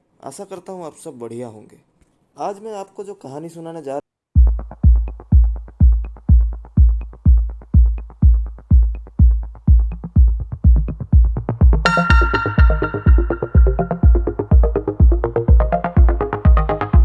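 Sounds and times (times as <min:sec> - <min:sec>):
heavy kick drum beat: 0:04.4 - 0:17.0
sustained synthesizer chord: 0:11.9 - 0:17.0.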